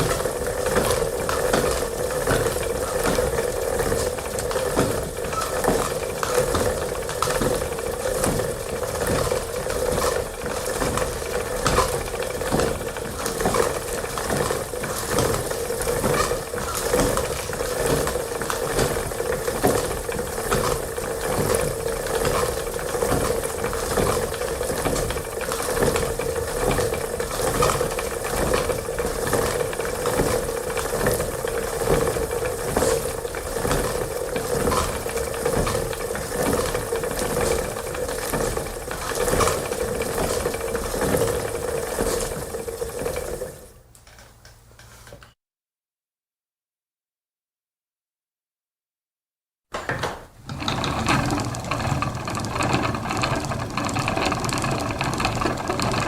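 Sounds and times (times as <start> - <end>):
spinning wheel clicking and whirring: 0.0 - 43.7, 50.5 - 56.0.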